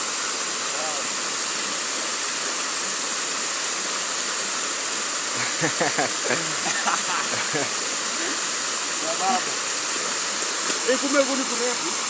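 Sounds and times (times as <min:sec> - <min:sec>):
river water rushing: 0:00.0 - 0:12.0
person speaking: 0:05.4 - 0:08.4.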